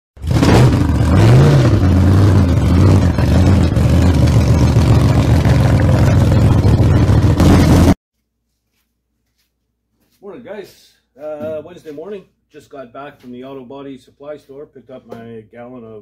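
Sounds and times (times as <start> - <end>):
vehicle engine running loudly: 0.2 - 8.0.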